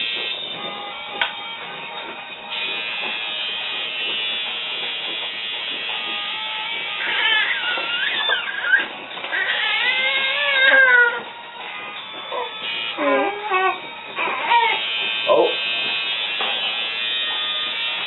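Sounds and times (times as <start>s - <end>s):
tattoo machine buzzing: 0.0s - 18.0s
high wavering cries: 6.2s - 15.7s.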